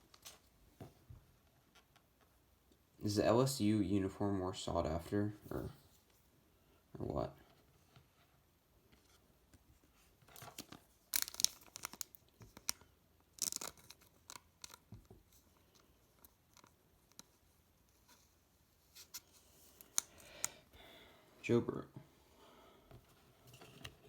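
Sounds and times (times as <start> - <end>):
cards clicking and rustling: 10.2 - 17.4, 19.0 - 20.6
card pack wrapper tearing: 10.4 - 14.9.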